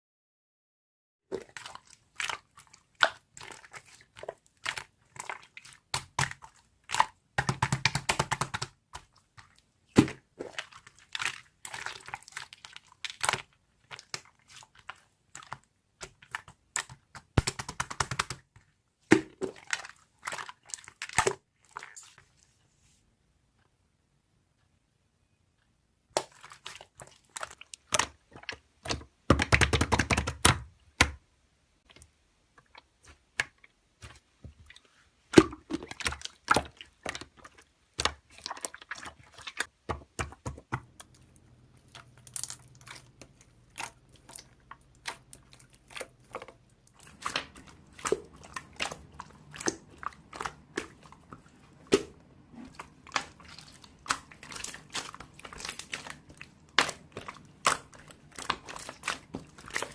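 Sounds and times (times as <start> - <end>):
crinkling: 31.8 - 59.9.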